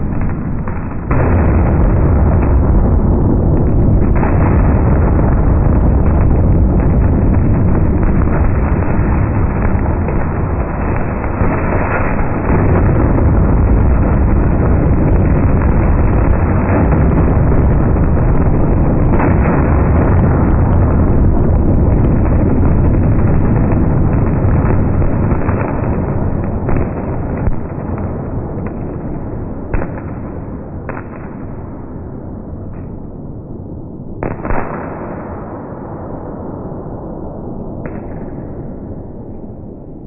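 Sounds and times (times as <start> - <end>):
fireworks rumbling in a box: 0.0 - 31.6
sharp firework cracks: 0.0 - 33.4, 34.1 - 39.7.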